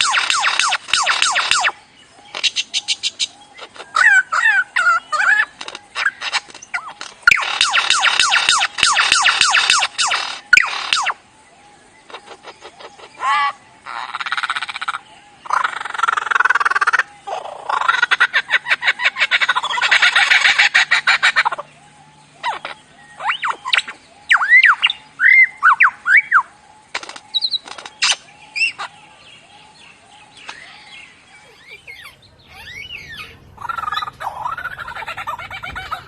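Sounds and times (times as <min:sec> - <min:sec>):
bird whistled chirps: 0:00.0 - 0:01.8, 0:04.8 - 0:11.2, 0:22.4 - 0:26.5, 0:27.3 - 0:36.0
bird rattling chatter: 0:26.9 - 0:28.1.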